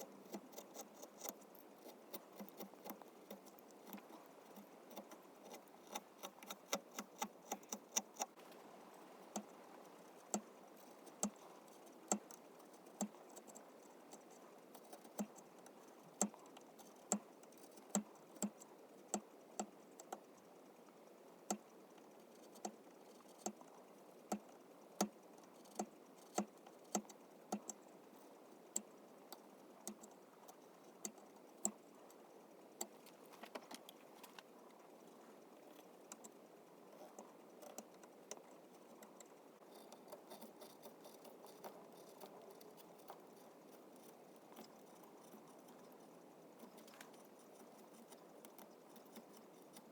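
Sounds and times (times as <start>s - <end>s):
carving tools tapping wood: 0.2s - 8.4s, 10.3s - 11.5s, 12.1s - 14.3s, 14.9s - 15.4s, 16.2s - 16.4s, 17.1s - 20.2s, 24.3s - 27.8s.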